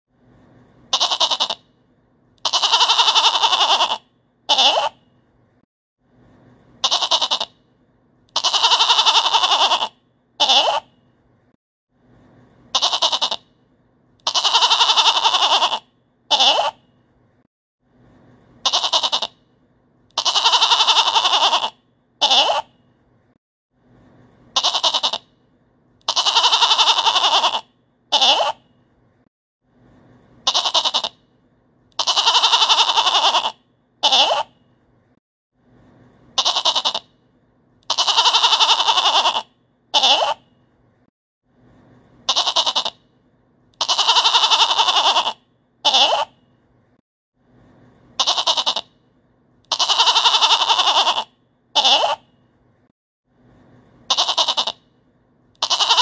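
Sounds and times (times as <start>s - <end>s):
goat bleating: 0.9s - 1.6s, 2.4s - 5.0s, 6.8s - 7.5s, 8.3s - 10.8s, 12.7s - 13.4s, 14.2s - 16.8s, 18.6s - 19.3s, 20.2s - 22.7s, 24.6s - 25.2s, 26.1s - 28.6s, 30.4s - 31.2s, 32.0s - 34.5s, 36.4s - 37.0s, 37.9s - 40.4s, 42.3s - 43.0s, 43.8s - 46.3s, 48.2s - 48.9s, 49.7s - 52.2s, 54.1s - 54.8s, 55.6s - 56.0s.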